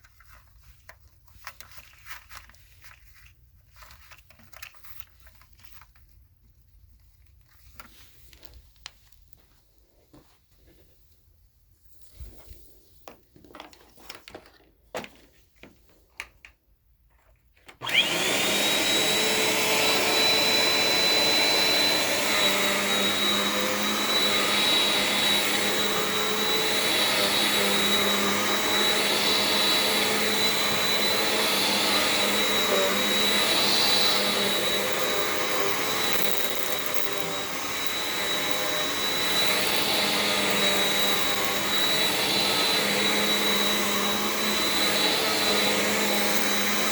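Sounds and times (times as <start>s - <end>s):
vacuum cleaner whining: 17.7s - 46.9s.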